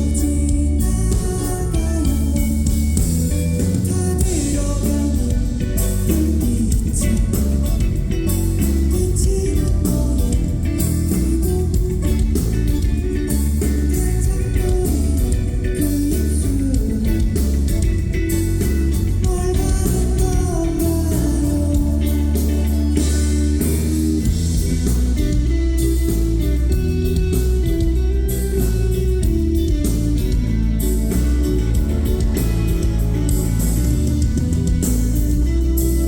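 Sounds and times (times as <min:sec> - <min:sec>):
person singing: 0:00.0 - 0:23.6
live band playing: 0:00.0 - 0:36.0.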